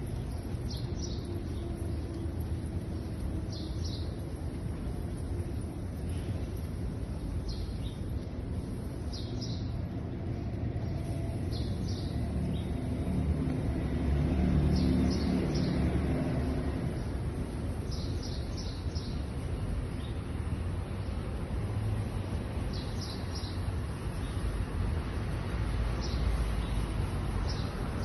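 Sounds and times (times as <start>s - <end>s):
birds chirping: 0.0s - 13.7s, 14.6s - 21.4s.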